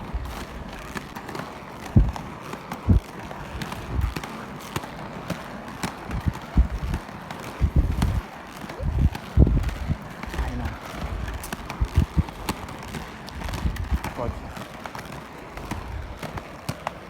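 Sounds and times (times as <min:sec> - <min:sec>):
roller skates rolling: 0:00.0 - 0:17.0
short low thuds: 0:02.0 - 0:02.2, 0:03.8 - 0:04.2, 0:06.1 - 0:07.0, 0:07.6 - 0:08.2, 0:08.8 - 0:10.0, 0:11.1 - 0:12.3.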